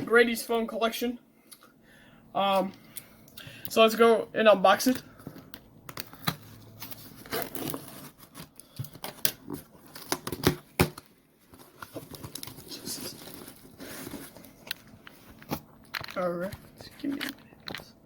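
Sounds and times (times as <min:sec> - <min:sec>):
packaging crinkling and tearing: 0:05.9 - 0:17.9
package clicks and knocks: 0:08.8 - 0:11.1.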